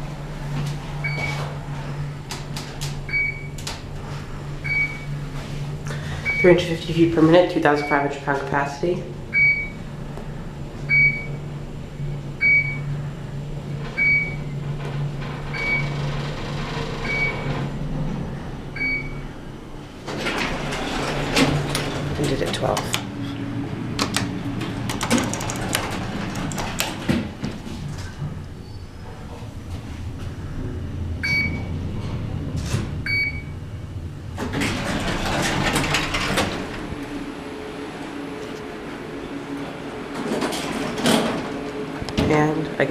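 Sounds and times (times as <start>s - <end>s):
elevator doors sliding: 0.0s - 42.9s
steady low hum: 0.0s - 42.9s
elevator high electronic beeps: 1.0s - 1.4s, 3.1s - 3.6s, 4.6s - 5.1s, 6.2s - 6.8s, 7.7s - 8.2s, 9.3s - 9.8s, 10.9s - 13.0s, 13.9s - 14.6s, 15.5s - 16.1s, 17.0s - 17.7s, 18.7s - 19.3s, 31.2s - 31.9s, 33.0s - 33.8s
elevator arrival chime: 6.2s - 6.8s, 7.7s - 8.2s, 15.5s - 16.0s, 17.0s - 17.5s, 18.7s - 19.3s, 31.2s - 31.8s, 33.0s - 33.6s.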